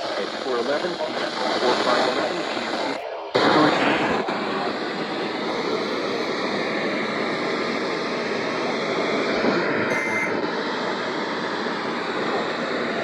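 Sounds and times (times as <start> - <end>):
radio static hiss: 0.0 - 13.0
faint high tone: 9.9 - 10.3.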